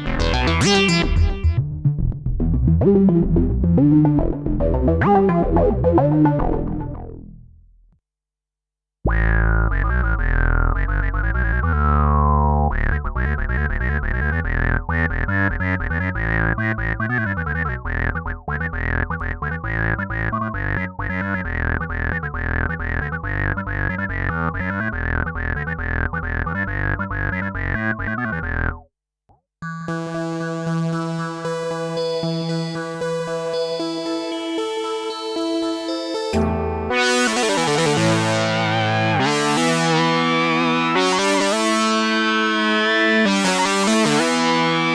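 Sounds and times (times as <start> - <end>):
fast sequenced synthesizer notes: 0.0 - 7.4, 9.1 - 28.8, 29.6 - 44.9
synthesizer tone sliding down: 35.4 - 44.9
synthesizer deep held note: 36.4 - 42.9.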